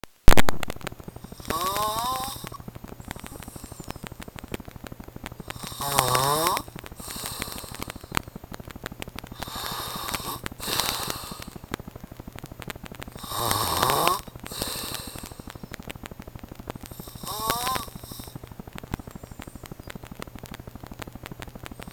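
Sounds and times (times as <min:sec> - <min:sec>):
breathy airflow: 0:01.1 - 0:04.6, 0:05.4 - 0:08.6, 0:09.2 - 0:11.8, 0:12.9 - 0:15.8
man snoring: 0:01.3 - 0:04.0, 0:05.5 - 0:08.1, 0:09.4 - 0:11.6, 0:13.2 - 0:15.5, 0:16.8 - 0:18.4.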